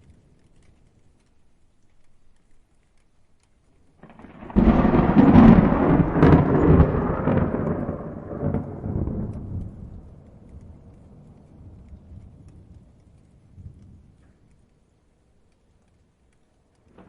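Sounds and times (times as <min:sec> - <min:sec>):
thunderclap with rumble: 0:04.0 - 0:14.2.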